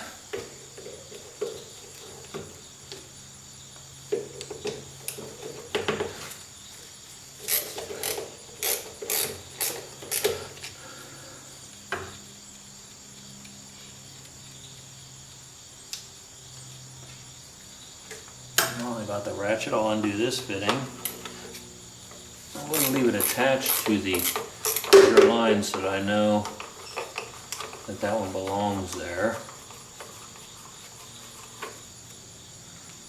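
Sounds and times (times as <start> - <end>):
metal hand tools clinking: 22.6 - 29.6.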